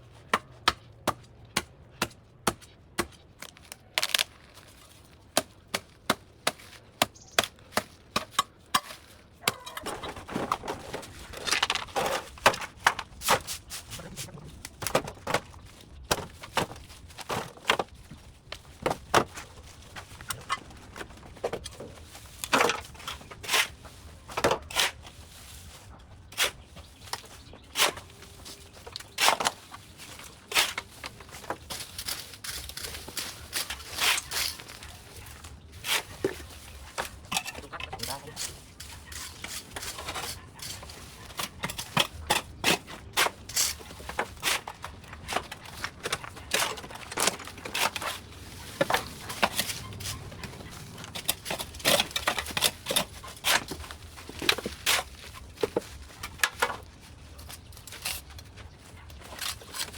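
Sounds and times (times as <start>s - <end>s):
blade chopping vines: 1.6s - 13.7s
rustling of cut vegetation: 3.0s - 59.9s.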